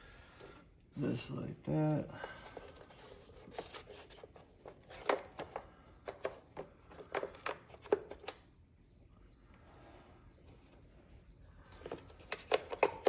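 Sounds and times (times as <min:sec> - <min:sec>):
parts clicking and tapping: 0:02.5 - 0:08.6, 0:11.7 - 0:13.0.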